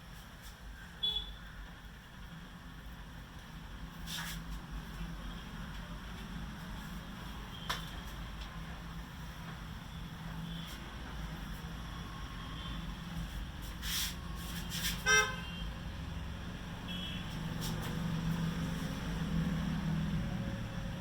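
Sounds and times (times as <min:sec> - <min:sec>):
vehicle horn toot: 0:01.0 - 0:01.4, 0:14.9 - 0:15.7, 0:16.9 - 0:17.4.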